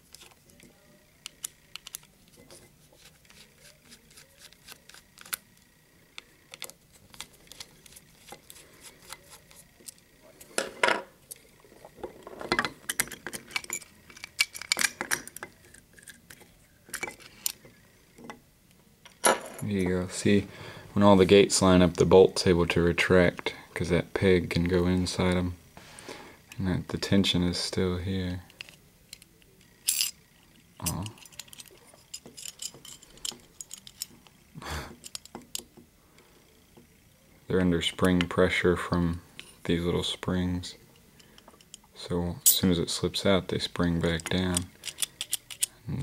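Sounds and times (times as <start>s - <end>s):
metallic clicks of safe lock: 44.2s - 45.7s.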